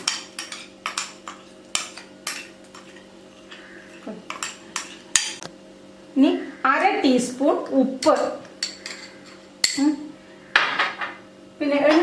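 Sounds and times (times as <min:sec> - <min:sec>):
spoon scraping a bowl: 0:00.0 - 0:05.4, 0:08.0 - 0:09.8.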